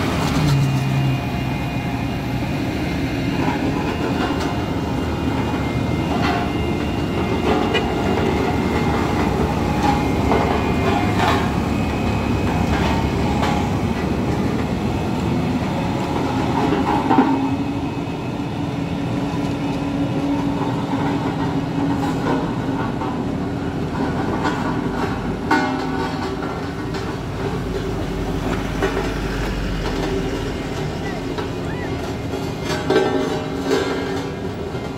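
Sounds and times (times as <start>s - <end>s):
steady droning note: 0.0s - 19.4s
diesel truck engine running: 0.0s - 34.9s
knocks and clatter: 5.3s - 14.8s, 23.9s - 34.9s.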